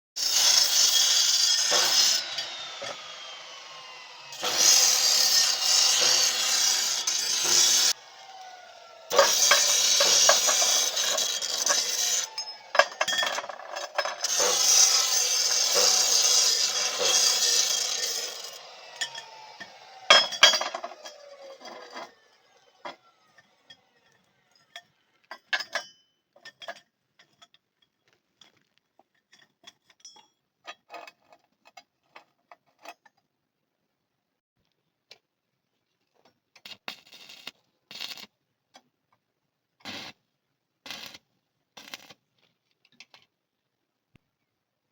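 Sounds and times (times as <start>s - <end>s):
angle grinder on steel: 0.2s - 24.8s.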